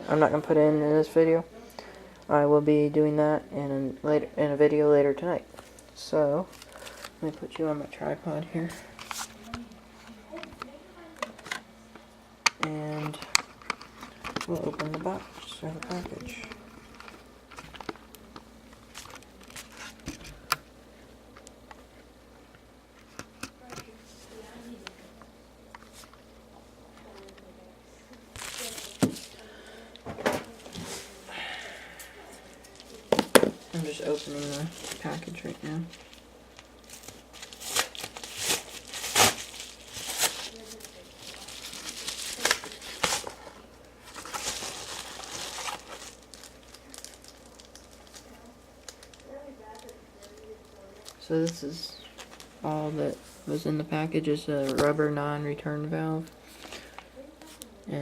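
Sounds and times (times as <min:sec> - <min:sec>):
package clicks and crinkles: 0:12.4 - 0:20.6, 0:28.3 - 0:30.6, 0:32.6 - 0:51.2.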